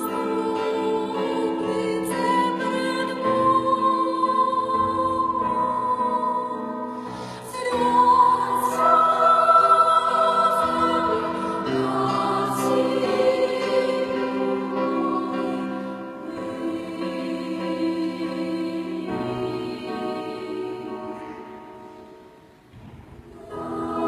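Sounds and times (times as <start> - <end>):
choir singing held notes: 0.0 - 22.6, 23.2 - 24.0.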